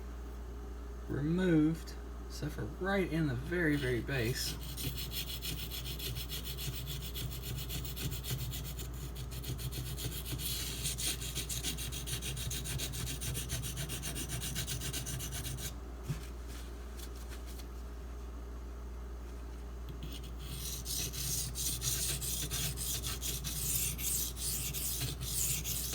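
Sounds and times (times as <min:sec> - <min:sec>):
knife scraping on whetstone: 0:03.8 - 0:15.7, 0:20.0 - 0:25.9.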